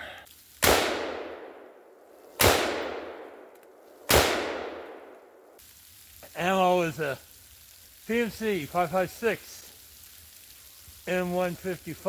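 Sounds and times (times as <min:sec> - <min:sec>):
rifle shots with long echo: 0:00.6 - 0:05.6.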